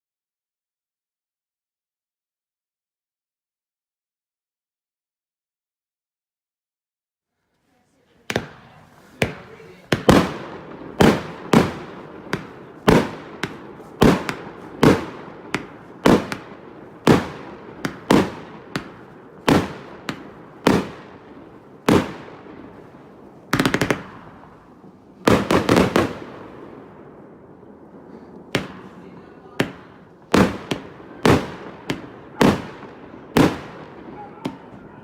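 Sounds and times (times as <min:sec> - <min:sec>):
firework crackle: 0:07.5 - 0:35.0
firework bangs: 0:08.2 - 0:35.0.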